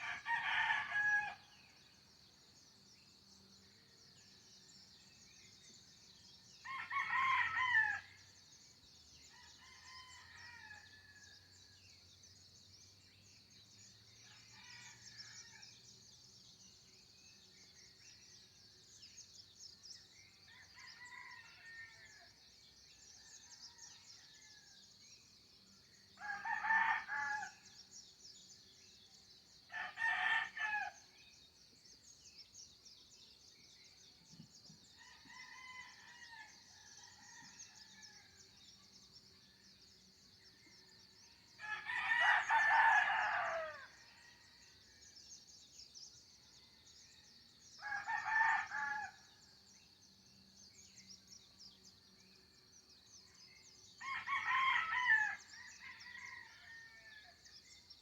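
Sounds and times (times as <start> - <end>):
roosters crowing: 26.2 - 27.5, 41.6 - 44.0, 54.0 - 57.2.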